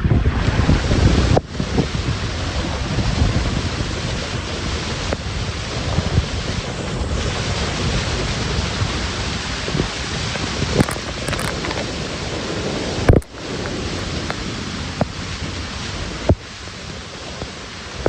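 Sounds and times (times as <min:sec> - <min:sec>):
wind buffeting microphone: 0:00.0 - 0:18.0
short bumps: 0:10.8 - 0:14.4
steady rushing noise: 0:10.8 - 0:18.0.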